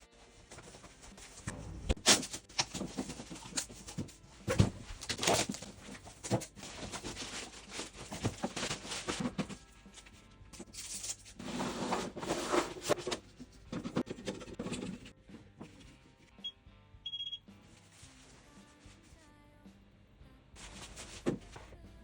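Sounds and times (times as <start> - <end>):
objects knocking and tapping: 12.9 - 15.7.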